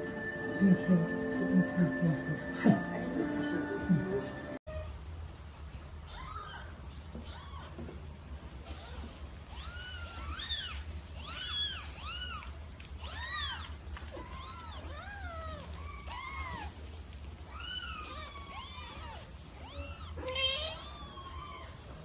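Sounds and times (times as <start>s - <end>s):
cat meowing: 8.7s - 16.8s, 17.5s - 22.0s.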